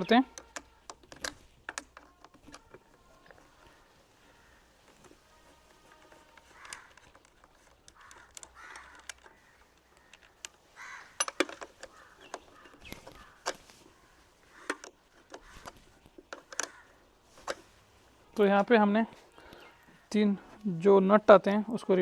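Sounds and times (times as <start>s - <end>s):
crows cawing: 3.2s - 17.2s, 19.4s - 20.2s
spanner clicking on bolts: 11.2s - 13.7s.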